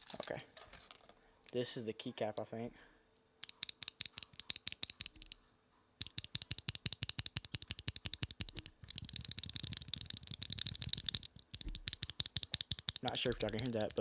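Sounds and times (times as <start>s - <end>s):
mechanical keyboard keystrokes: 3.4s - 5.4s, 6.0s - 14.0s.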